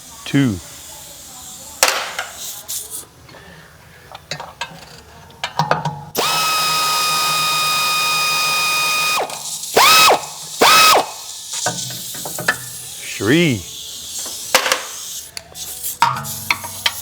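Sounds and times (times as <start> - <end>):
power tool motor whining: 6.2 - 11.2.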